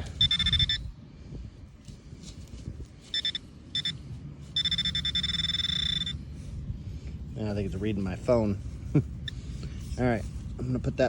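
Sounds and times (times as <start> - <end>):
metal detector beeping: 0.0 - 1.0, 2.9 - 6.5.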